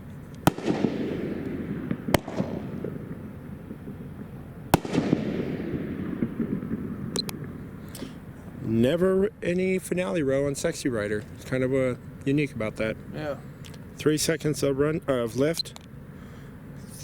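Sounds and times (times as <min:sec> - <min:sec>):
crackling hiss: 0:00.0 - 0:17.0
firework shells bursting: 0:00.3 - 0:08.6
small firework pops: 0:00.4 - 0:08.0.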